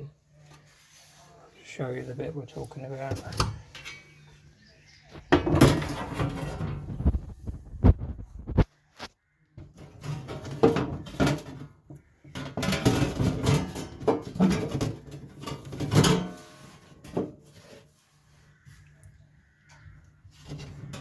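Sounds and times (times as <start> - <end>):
steel panel knocking and scraping: 5.2 - 8.6, 9.6 - 17.7.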